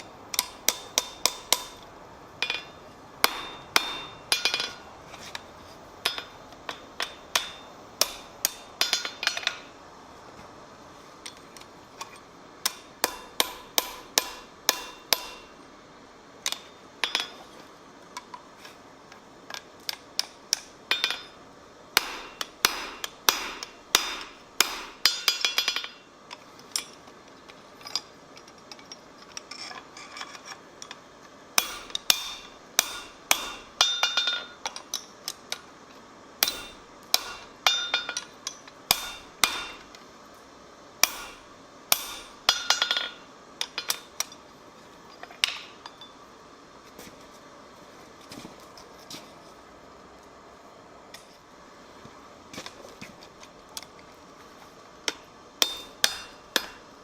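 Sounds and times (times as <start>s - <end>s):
hammer striking anvil: 0.4s - 1.8s, 2.4s - 4.8s, 7.0s - 9.5s, 12.7s - 15.6s, 22.0s - 25.9s, 31.6s - 34.4s, 36.4s - 38.1s, 38.9s - 39.9s, 41.0s - 43.2s, 55.6s - 56.9s.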